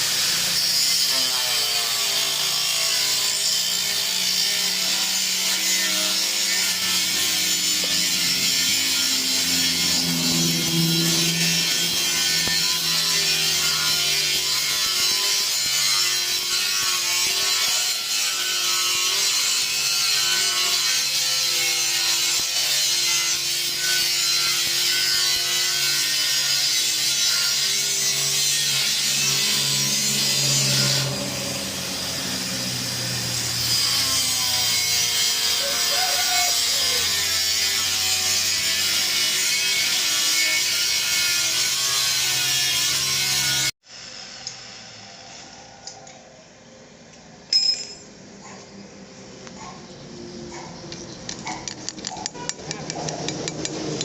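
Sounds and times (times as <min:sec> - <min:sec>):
low wavering hum: 0:07.0 - 0:14.2.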